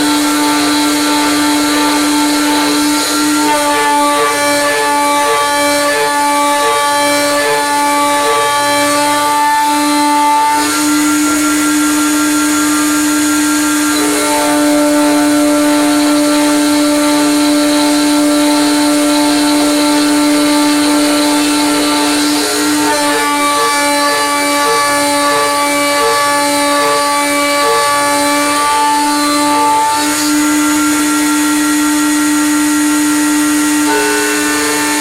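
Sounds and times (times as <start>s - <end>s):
end mill cutting metal: 0.0s - 35.0s
spindle motor whine: 0.0s - 35.0s.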